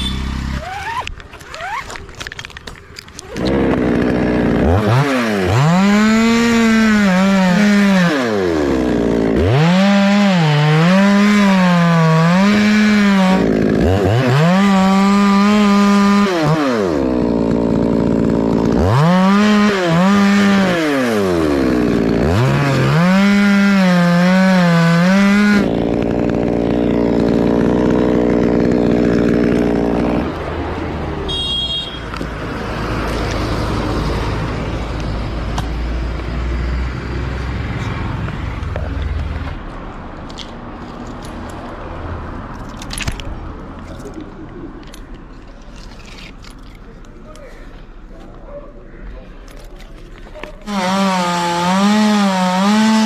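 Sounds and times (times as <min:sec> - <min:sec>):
chainsaw revving and cutting wood: 0:00.0 - 0:01.8, 0:03.1 - 0:39.7, 0:50.3 - 0:53.0.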